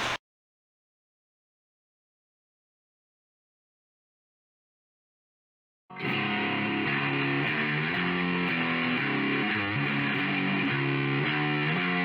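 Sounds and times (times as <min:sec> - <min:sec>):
distorted electric guitar: 0:05.9 - 0:12.0.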